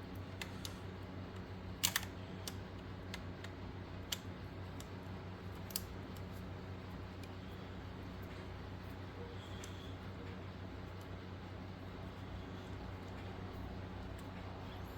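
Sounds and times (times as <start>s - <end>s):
low steady hum: 0.0s - 14.9s.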